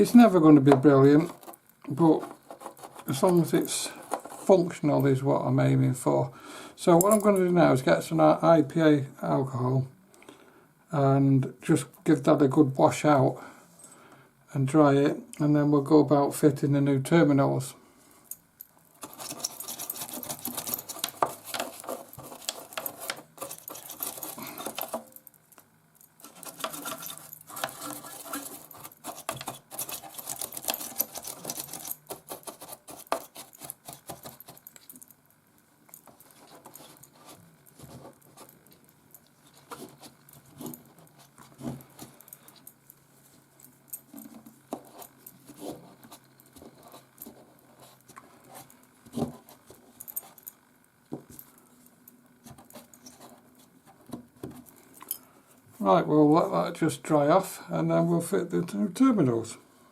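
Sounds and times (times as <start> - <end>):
scratchy scrubbing of plastic: 1.3 - 4.6, 19.0 - 25.0, 26.2 - 34.6.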